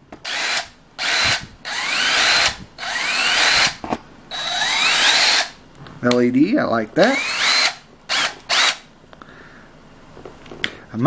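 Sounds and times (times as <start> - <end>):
power tool motor whining: 0.2 - 5.6, 7.0 - 8.9.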